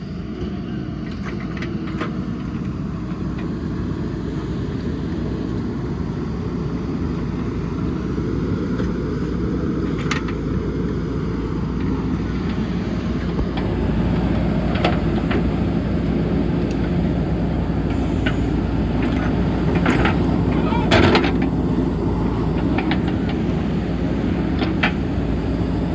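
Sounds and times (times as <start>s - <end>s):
diesel engine running: 0.0s - 25.9s.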